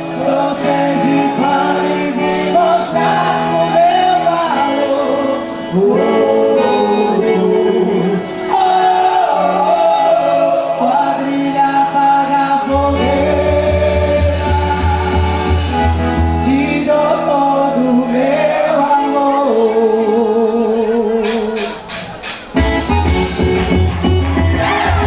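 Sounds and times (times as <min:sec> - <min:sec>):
person singing: 0:00.0 - 0:22.0.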